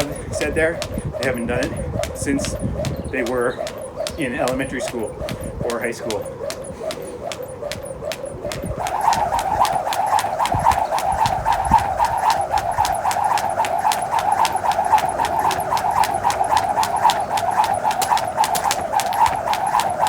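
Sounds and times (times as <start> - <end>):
jump rope swishing: 0.0 - 20.0
jump rope tapping the ground: 0.0 - 20.0.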